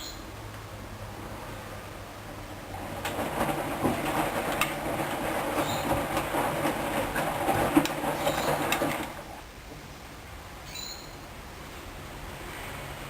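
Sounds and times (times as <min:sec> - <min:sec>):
washing machine drum rumbling: 0:02.0 - 0:09.9
wet laundry sloshing: 0:02.6 - 0:09.4
clicks and knocks: 0:02.8 - 0:09.8.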